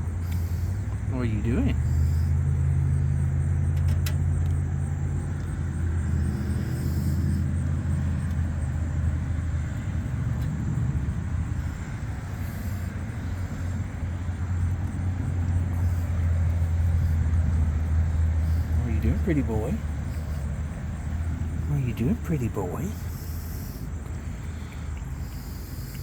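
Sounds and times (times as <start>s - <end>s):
low rumble and hum: 0.0s - 26.0s.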